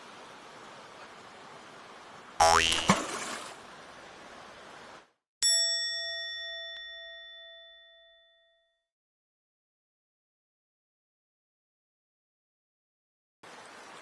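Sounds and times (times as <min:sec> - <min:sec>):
rushing stream water: 0:00.0 - 0:05.0, 0:13.5 - 0:14.0.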